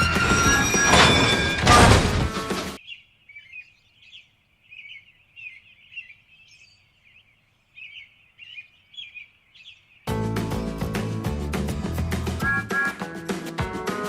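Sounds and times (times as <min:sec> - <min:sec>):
loud music: 0:10.1 - 0:14.0.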